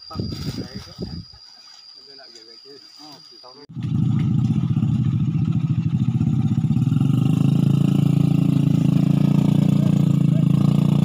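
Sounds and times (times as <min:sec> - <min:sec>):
engine idling with fast chugging: 0:03.7 - 0:11.0.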